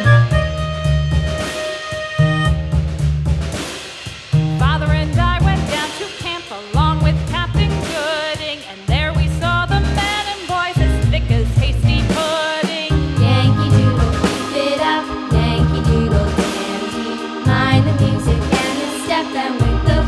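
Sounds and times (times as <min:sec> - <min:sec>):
upbeat song with singing: 0:04.5 - 0:20.0.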